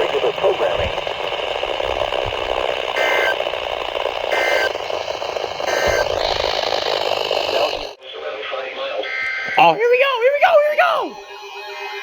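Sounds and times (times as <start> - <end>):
radio static hiss: 0.0 - 9.8
two-tone digital warble: 2.9 - 3.5, 4.2 - 8.0.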